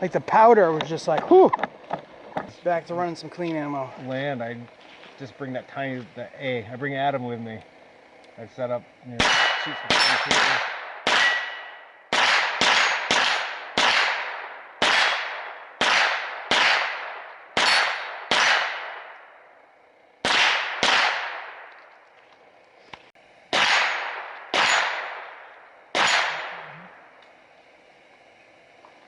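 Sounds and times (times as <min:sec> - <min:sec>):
rifle shots: 0:09.2 - 0:19.3, 0:20.2 - 0:21.8, 0:23.5 - 0:26.7.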